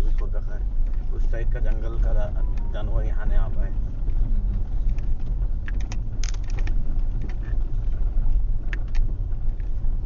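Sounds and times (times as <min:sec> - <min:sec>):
car engine and tyres rumbling: 0:00.0 - 0:10.0
car knocks and rattles: 0:03.7 - 0:10.0.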